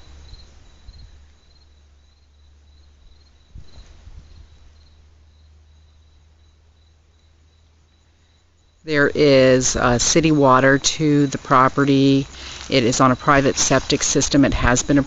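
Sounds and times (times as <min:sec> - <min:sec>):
cricket chirping: 0:00.0 - 0:15.0.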